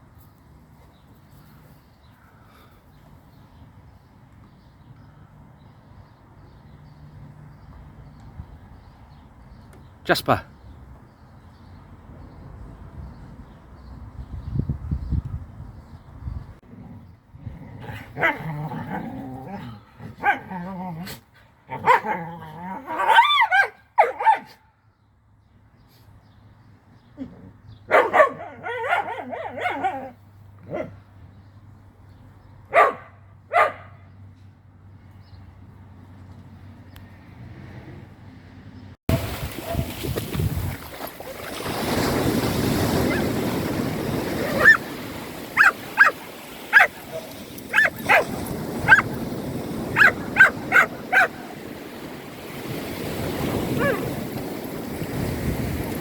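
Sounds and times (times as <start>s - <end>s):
dog barking: 20.2s - 20.5s, 21.8s - 22.2s, 22.9s - 24.6s, 27.9s - 31.0s, 32.7s - 34.0s, 39.6s - 40.0s, 44.4s - 44.9s, 45.5s - 49.2s, 49.9s - 51.5s, 53.7s - 54.1s
dog yipping: 27.9s - 30.1s, 32.7s - 33.9s, 44.4s - 44.8s, 45.6s - 49.1s, 50.0s - 51.4s, 53.7s - 54.1s
sea waves breaking on beach: 39.1s - 56.0s.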